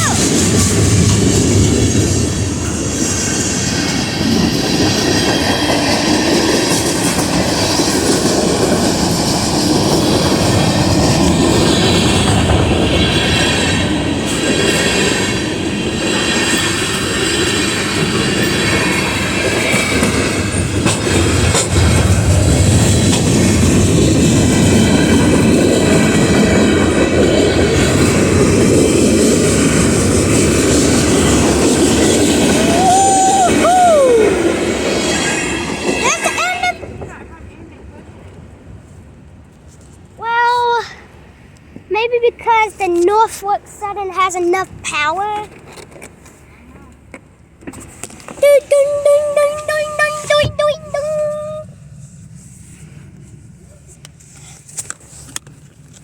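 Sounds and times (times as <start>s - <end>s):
train wheels squealing: 0.0s - 22.2s, 29.7s - 37.0s
freight train cars clacking: 0.0s - 38.6s.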